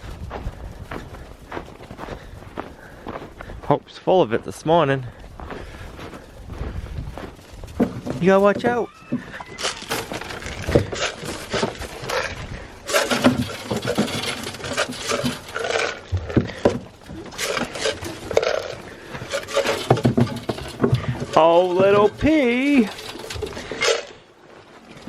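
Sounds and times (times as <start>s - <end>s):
goats scuffling and knocking: 6.7s - 25.0s.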